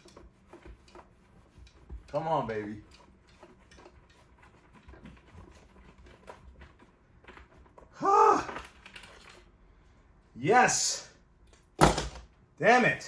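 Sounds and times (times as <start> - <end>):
hands clicking and scraping parts: 0.0 - 9.6
person groaning with effort: 8.0 - 8.6.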